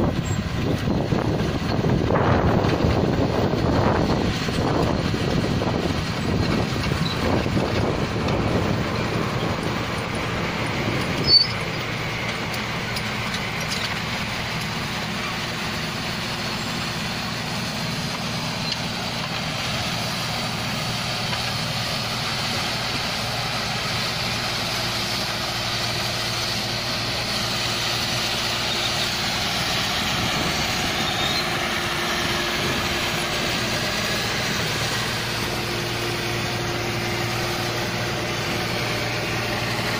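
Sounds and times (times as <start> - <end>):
wind buffeting microphone: 0.0 - 12.5, 29.2 - 35.7
combine harvester engine hum: 0.0 - 39.9.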